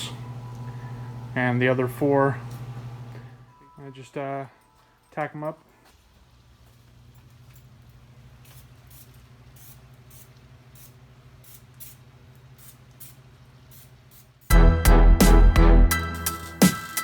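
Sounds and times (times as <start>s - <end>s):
low electrical hum: 0.0s - 14.5s
music: 14.5s - 17.0s.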